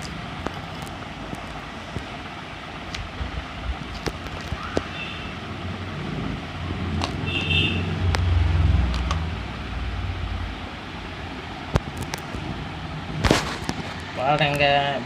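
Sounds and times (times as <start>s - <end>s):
motor vehicle passing: 5.0s - 11.6s.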